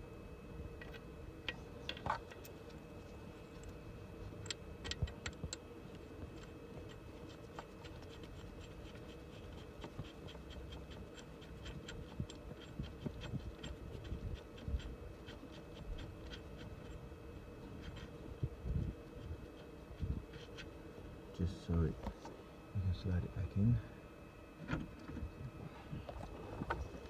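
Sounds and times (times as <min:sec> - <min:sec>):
faint steady hum: 0:00.0 - 0:27.0
hand tools and metal parts clicking: 0:06.4 - 0:17.0.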